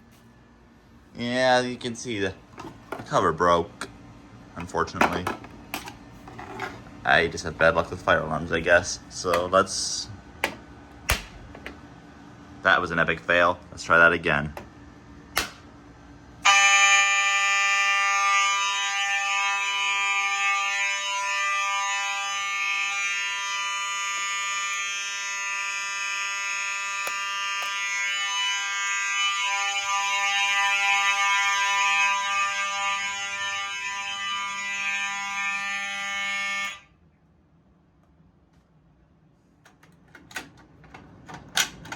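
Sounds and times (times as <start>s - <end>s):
buzzing fire alarm horns: 16.3s - 37.0s.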